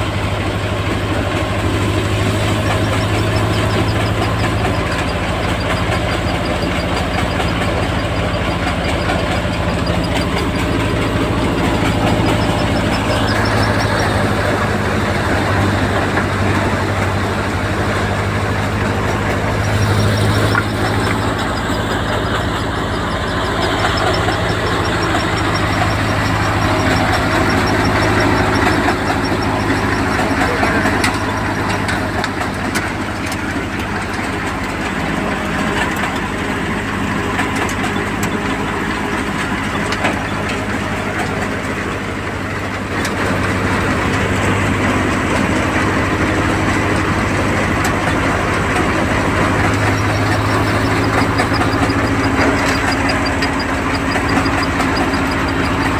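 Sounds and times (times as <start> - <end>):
harvesting machine engine running: 0.0 - 55.9.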